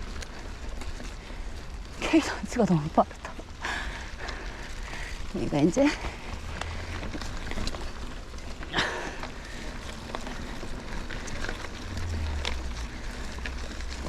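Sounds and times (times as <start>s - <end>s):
clicks and crunches on dirt: 0.0s - 14.0s.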